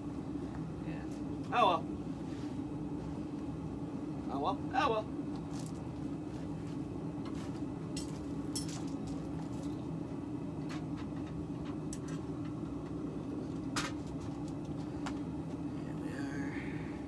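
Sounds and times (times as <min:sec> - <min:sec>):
steady low hum: 0:00.0 - 0:17.0
light clicks and clinks: 0:08.0 - 0:09.8.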